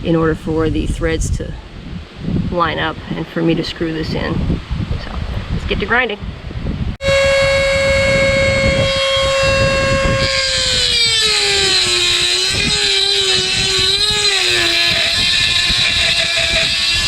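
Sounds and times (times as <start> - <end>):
grinding wheel on metal: 7.0 - 17.0
rotary tool high whine: 7.0 - 17.0.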